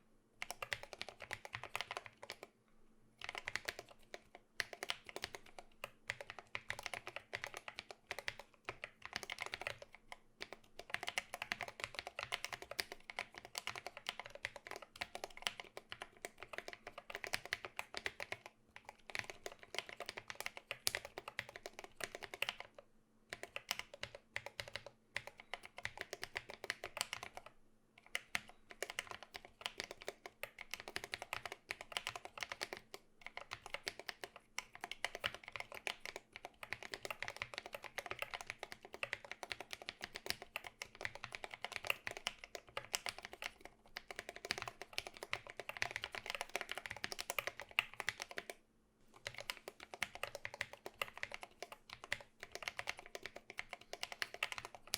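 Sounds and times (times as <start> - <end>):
typing on mechanical keyboard: 0.4 - 2.5, 3.2 - 48.6, 49.2 - 54.9.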